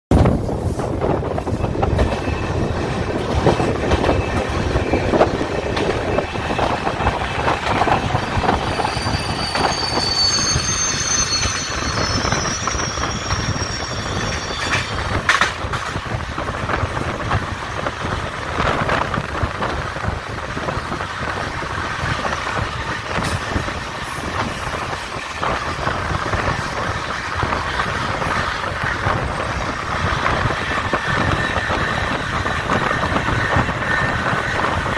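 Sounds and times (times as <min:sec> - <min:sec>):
train wheels rumbling on rails: 0:00.1 - 0:34.9
high wheel squeal: 0:03.4 - 0:15.5.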